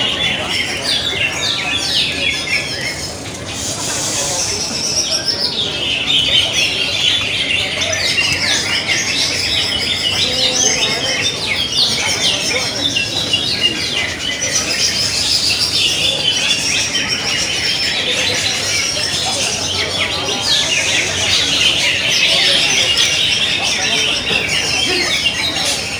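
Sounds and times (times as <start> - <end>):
chorus of birds singing: 0.0 - 25.9.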